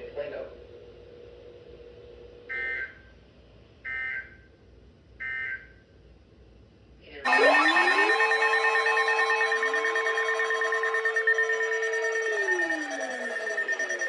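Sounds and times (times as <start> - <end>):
loud steady alert tone: 7.3 - 14.0
two-toned data bursts: 7.3 - 14.0.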